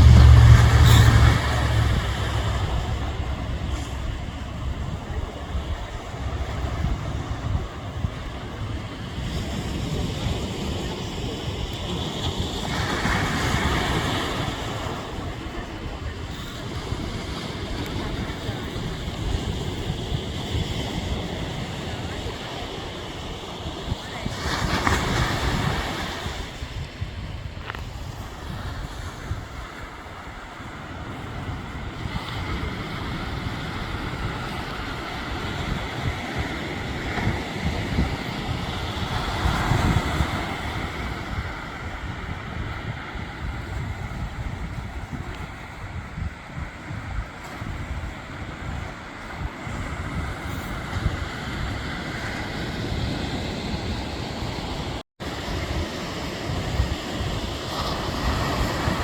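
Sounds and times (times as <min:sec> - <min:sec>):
ocean surf hiss: 0:00.0 - 0:19.3
ocean surf washing on shore: 0:00.0 - 0:59.0
wind rumbling on microphone: 0:00.0 - 0:59.0.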